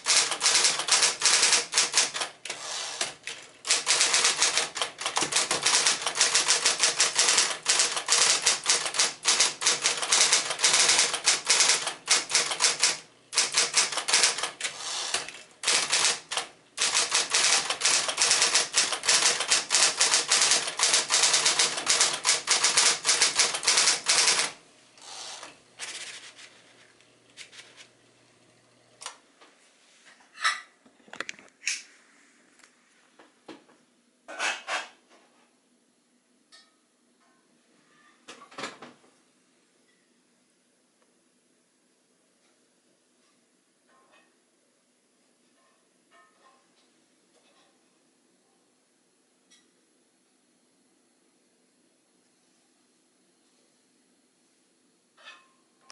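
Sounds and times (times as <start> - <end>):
electric typewriter typing: 0.0 - 26.4
typewriter motor hum: 0.0 - 26.4.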